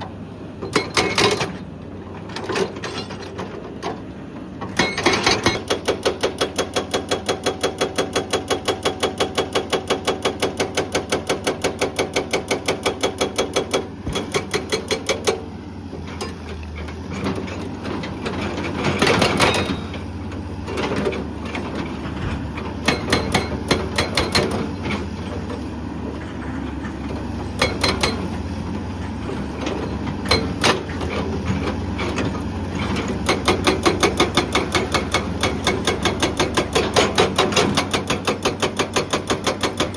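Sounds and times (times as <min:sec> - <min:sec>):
excavator diesel engine running: 0:00.0 - 0:39.9
hydraulic breaker hammering rock: 0:00.6 - 0:01.6, 0:04.6 - 0:15.5, 0:17.2 - 0:25.6, 0:26.4 - 0:39.9.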